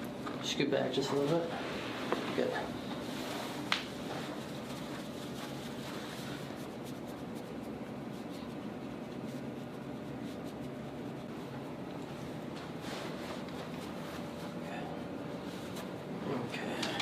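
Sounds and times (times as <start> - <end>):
room hum: 0.0 - 17.0
hands rubbing skin: 2.0 - 14.6.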